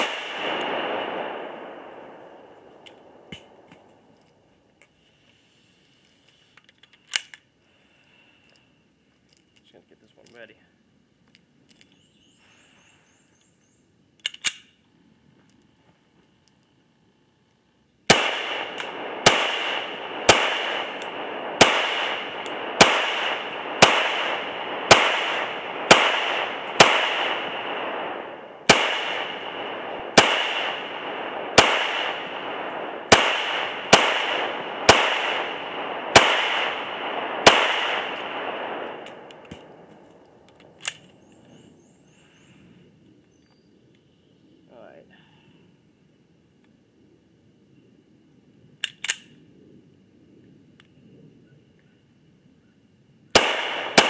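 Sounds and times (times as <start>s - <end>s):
pistol shots echoing: 0.0s - 3.9s, 18.1s - 41.0s, 53.3s - 54.0s
small click: 48.8s - 49.3s.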